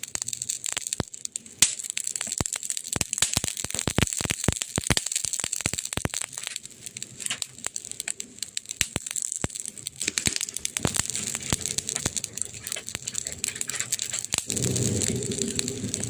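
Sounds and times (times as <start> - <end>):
wood fire crackling and popping: 0.0 - 16.0
deep rush of fire: 5.9 - 16.0.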